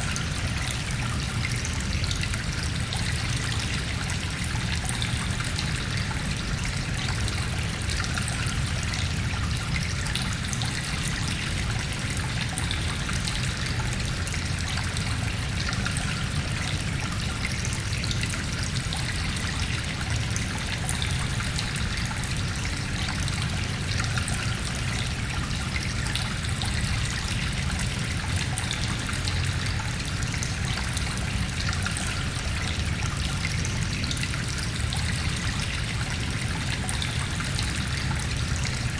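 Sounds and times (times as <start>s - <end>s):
stream trickling with echo: 0.0s - 38.9s.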